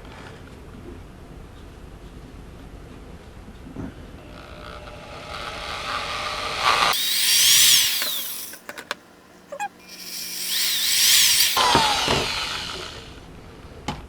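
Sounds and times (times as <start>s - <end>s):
power drill running: 5.4s - 8.9s, 9.6s - 13.2s.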